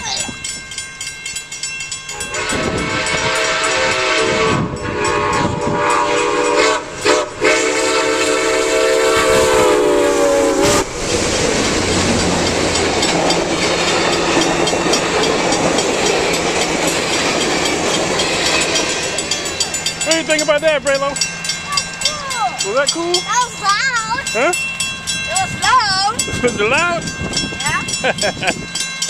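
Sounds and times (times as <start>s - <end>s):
train wheels clattering on rails: 0.0s - 29.0s
steam locomotive chime whistle: 1.6s - 11.1s.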